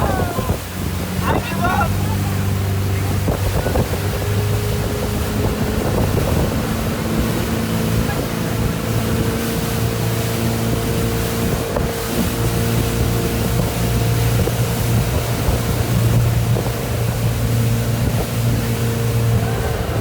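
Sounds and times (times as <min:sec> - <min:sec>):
motorboat engine drone: 0:00.0 - 0:20.0
rushing water: 0:00.0 - 0:20.0
wind buffeting microphone: 0:00.0 - 0:20.0.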